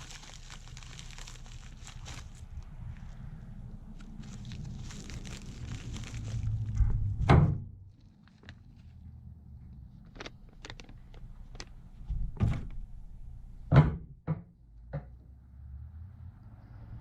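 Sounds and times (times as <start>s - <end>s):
clicks and knocks of handling parts: 10.0s - 12.8s.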